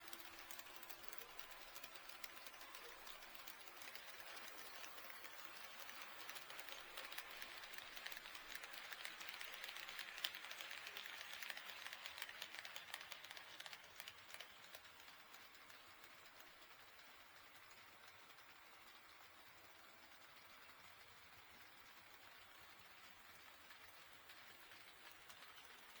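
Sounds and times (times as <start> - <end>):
model train rolling hiss: 0.0 - 17.7
wheels clicking over rail joints: 0.0 - 26.0.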